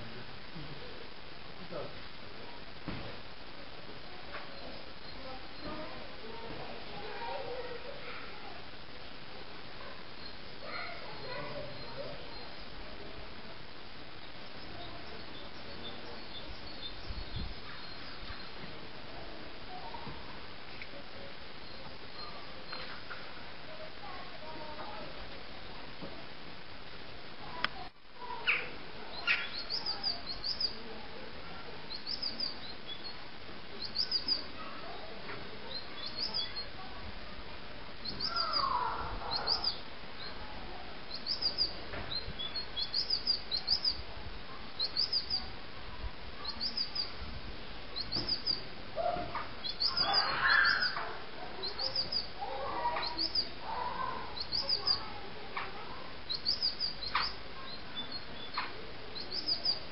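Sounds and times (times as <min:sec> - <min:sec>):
birds chirping: 0:04.4 - 0:08.0, 0:09.8 - 0:13.0, 0:14.0 - 0:18.7, 0:21.5 - 0:25.1, 0:28.2 - 0:30.9, 0:31.6 - 0:36.9, 0:38.0 - 0:45.5, 0:46.4 - 0:47.3, 0:47.9 - 0:59.9
lower longer bird calls: 0:28.4 - 0:30.8, 0:31.9 - 0:33.2, 0:33.8 - 0:34.6, 0:35.7 - 0:36.7, 0:38.0 - 0:40.4, 0:41.1 - 0:44.0, 0:44.8 - 0:45.5, 0:46.4 - 0:47.2, 0:48.0 - 0:55.1, 0:56.3 - 0:58.6, 0:59.2 - 0:59.9.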